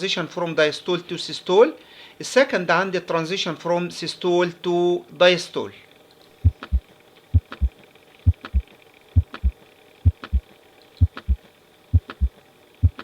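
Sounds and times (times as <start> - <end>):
heartbeat through stethoscope: 6.4 - 6.8, 7.4 - 7.7, 8.3 - 8.6, 9.2 - 10.4, 11.0 - 13.0.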